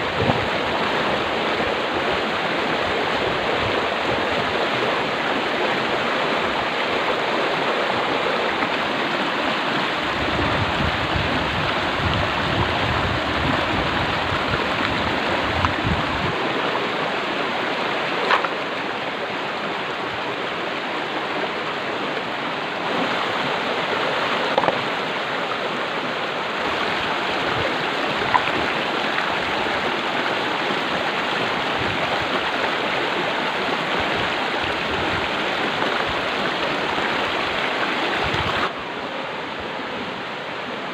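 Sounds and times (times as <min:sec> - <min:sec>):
stream water flowing: 0:00.0 - 0:40.9.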